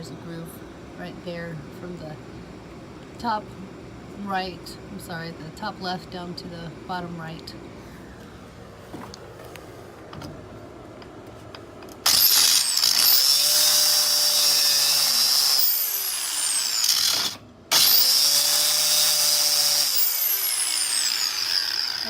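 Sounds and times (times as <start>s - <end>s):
rotary saw whine cutting metal: 12.0s - 22.0s.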